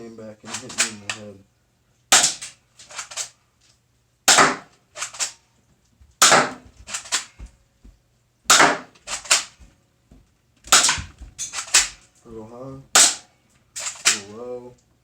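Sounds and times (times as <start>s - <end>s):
airsoft gun shots: 2.1s - 3.3s, 4.3s - 5.4s, 6.2s - 7.3s, 8.5s - 9.6s, 10.7s - 12.0s, 13.0s - 14.3s
pellet striking and bouncing: 6.2s - 7.5s, 8.5s - 9.7s.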